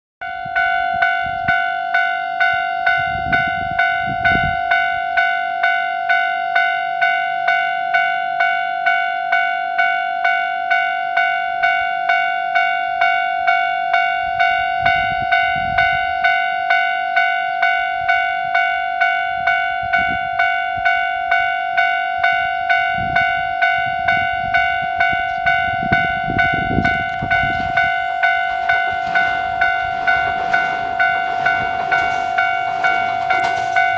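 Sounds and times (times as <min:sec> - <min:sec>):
level crossing warning bell: 0:00.2 - 0:33.9.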